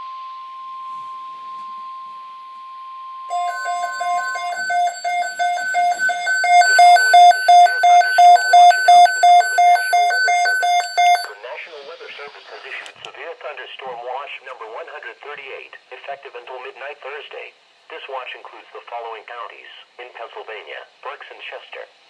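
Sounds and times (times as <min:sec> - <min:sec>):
radio alarm beeping: 0:03.3 - 0:11.4
steady high warning tone: 0:03.3 - 0:11.4
faint static: 0:03.3 - 0:22.0.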